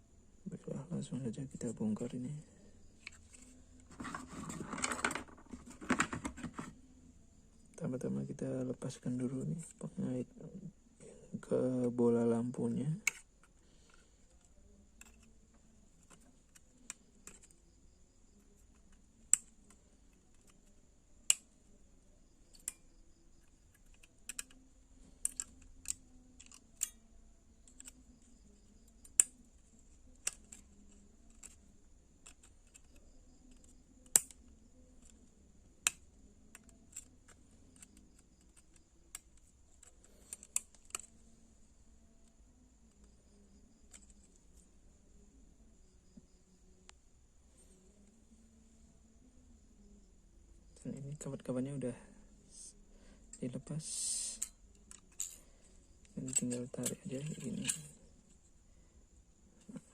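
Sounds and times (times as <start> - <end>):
small parts clicking and snapping: 3.0 - 6.7, 12.9 - 17.7, 18.3 - 21.6, 22.4 - 41.4, 42.2 - 44.7, 53.3 - 58.5.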